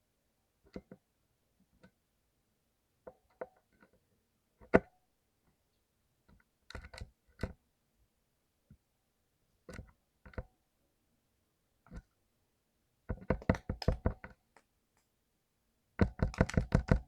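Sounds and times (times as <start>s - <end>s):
clicky keyboard key presses: 13.1s - 14.4s, 16.0s - 17.0s.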